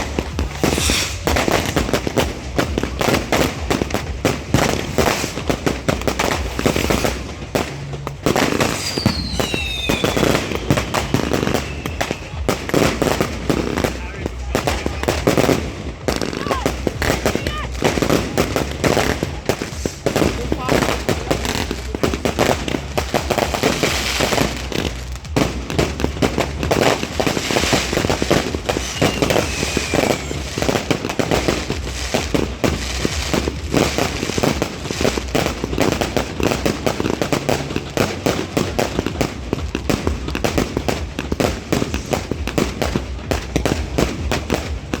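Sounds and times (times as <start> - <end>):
fireworks bangs and crackling: 0.0 - 45.0
firework falling whistle: 0.6 - 1.4, 8.8 - 12.3, 28.7 - 30.8.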